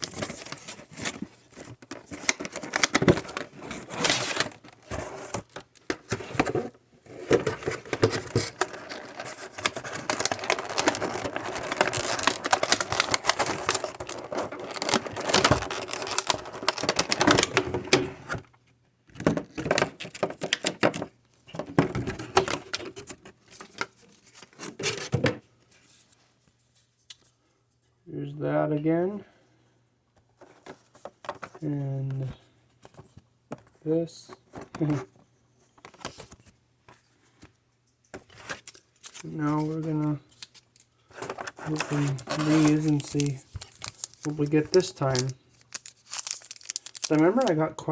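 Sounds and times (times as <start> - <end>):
packaging crinkling and tearing: 0.0 - 18.4, 19.5 - 20.9, 38.3 - 47.9.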